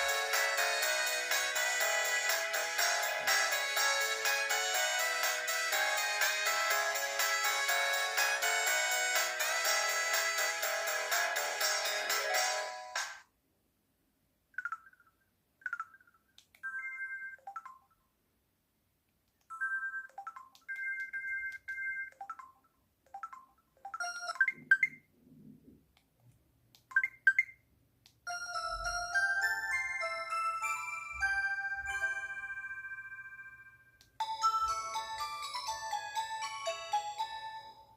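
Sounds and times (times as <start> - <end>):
chiming ringtone: 0.0 - 13.2, 15.7 - 18.0, 19.5 - 22.6, 23.2 - 25.0, 28.3 - 37.9
phone ringtone melody: 0.0 - 13.2, 16.6 - 18.0, 19.5 - 22.6, 23.2 - 25.0, 28.3 - 37.9.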